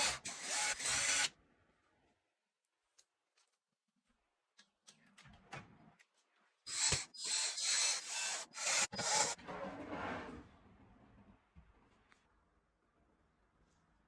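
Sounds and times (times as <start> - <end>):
loud rasping strokes: 0.0 - 1.3, 6.7 - 9.4
parts rubbing and scraping: 6.7 - 10.4.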